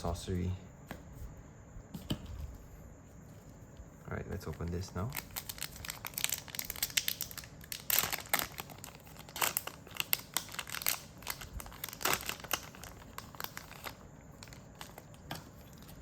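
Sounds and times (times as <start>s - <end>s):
packaging wrapper crinkling and tearing: 4.4s - 16.0s.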